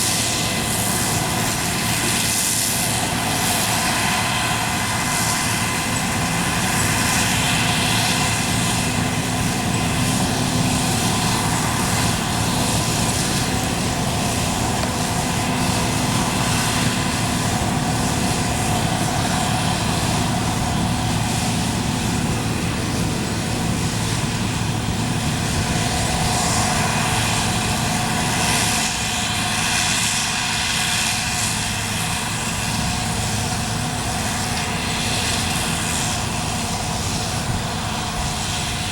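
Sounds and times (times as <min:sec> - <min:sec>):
combine harvester running: 0:00.0 - 0:38.9.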